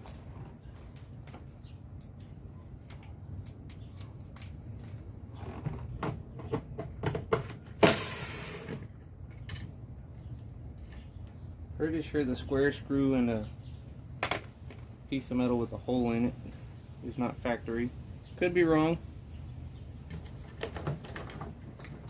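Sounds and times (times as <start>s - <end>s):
loud scrape: 7.8s - 8.9s.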